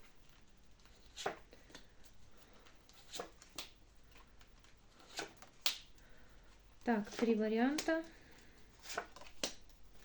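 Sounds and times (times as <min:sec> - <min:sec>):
cards being shuffled: 0:00.2 - 0:01.9, 0:02.6 - 0:05.9, 0:07.0 - 0:09.7.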